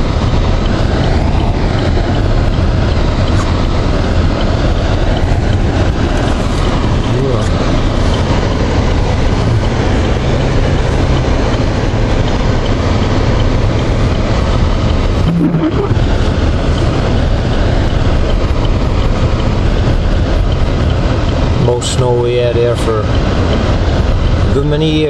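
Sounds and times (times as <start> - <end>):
car engine and road noise: 0.0 - 25.0
short hum: 15.2 - 16.0.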